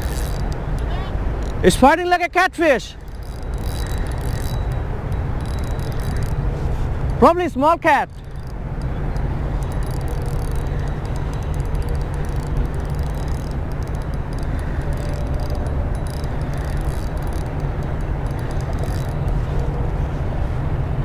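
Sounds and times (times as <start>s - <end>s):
wind buffeting microphone: 8.1s - 21.0s.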